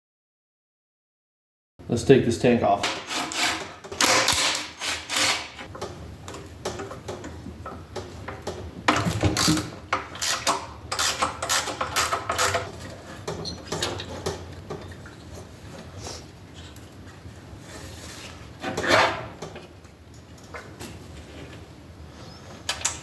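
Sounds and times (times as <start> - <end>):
ratchet wrench clicking: 10.2 - 12.6.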